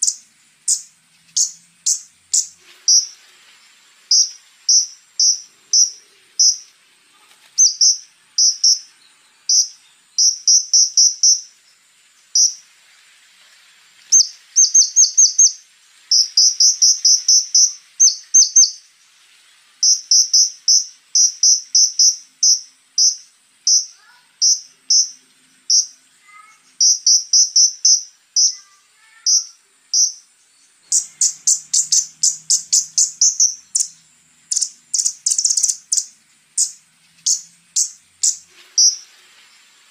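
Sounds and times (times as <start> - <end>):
bird singing high sharp notes: 0.0 - 3.2, 4.1 - 6.7, 7.6 - 8.9, 14.2 - 18.8, 26.8 - 39.0.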